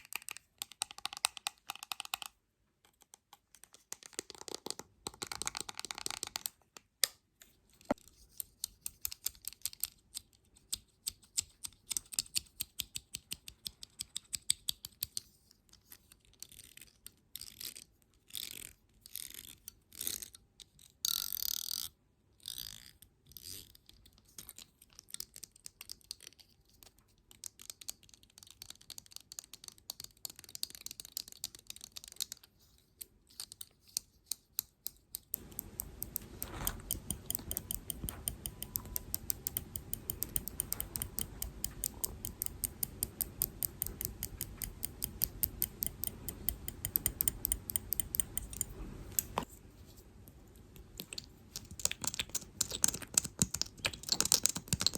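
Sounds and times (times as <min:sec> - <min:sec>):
low steady background: 0:00.0 - 0:54.9
fast even clicking: 0:35.4 - 0:49.4.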